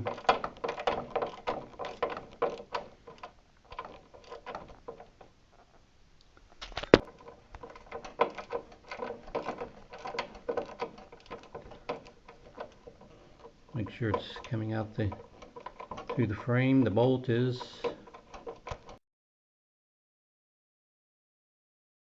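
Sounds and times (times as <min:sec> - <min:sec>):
hand tool turning screw in metal: 0:06.9 - 0:19.0.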